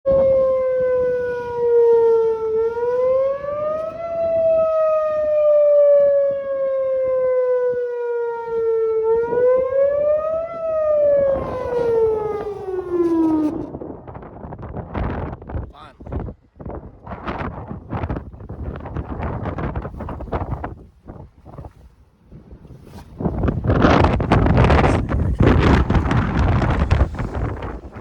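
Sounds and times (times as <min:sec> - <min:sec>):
warning siren wailing: 0:00.1 - 0:14.4, 0:23.7 - 0:28.0.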